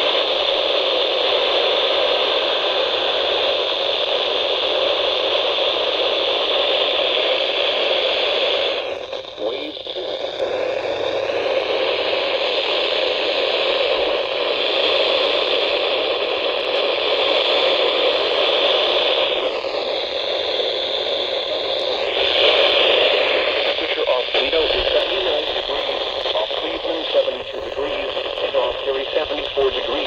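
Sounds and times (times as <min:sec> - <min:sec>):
radio static hiss: 0:00.0 - 0:30.0.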